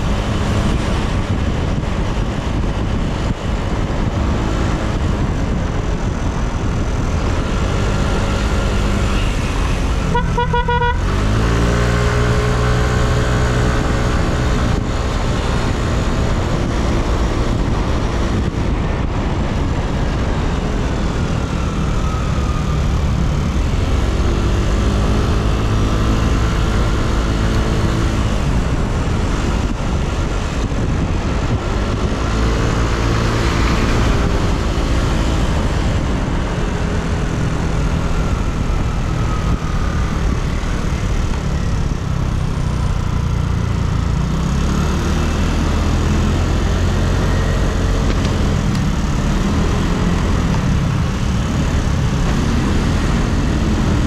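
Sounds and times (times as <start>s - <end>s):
road and wind noise: 0.0s - 54.0s
vehicle horn honking: 10.0s - 11.1s.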